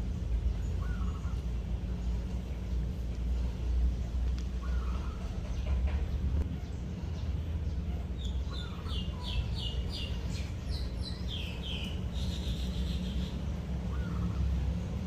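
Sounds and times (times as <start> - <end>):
steady low rumble: 0.0 - 15.0
bird chirping: 4.5 - 15.0.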